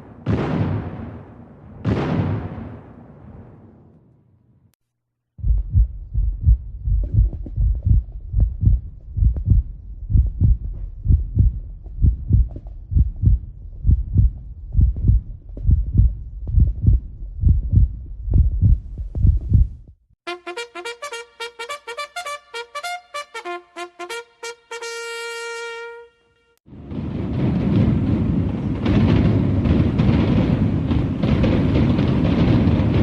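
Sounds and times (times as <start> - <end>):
heartbeat thuds: 5.4 - 20.0.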